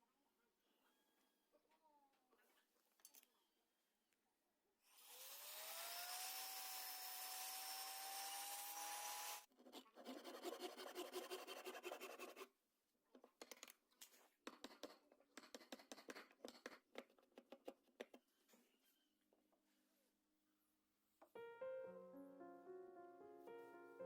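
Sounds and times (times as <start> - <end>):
power tool whining: 5.0 - 9.5
rasping on wood: 9.7 - 12.5.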